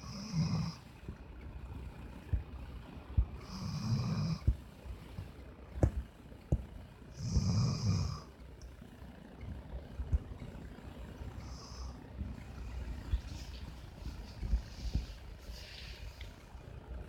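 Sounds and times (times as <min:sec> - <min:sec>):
dog snoring: 0:00.0 - 0:00.9, 0:03.4 - 0:04.6, 0:07.1 - 0:08.3, 0:11.3 - 0:12.0.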